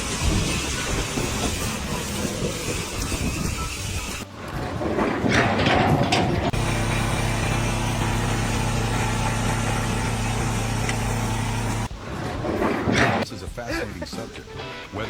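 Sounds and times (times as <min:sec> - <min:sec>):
engine running steadily: 0:03.8 - 0:12.1.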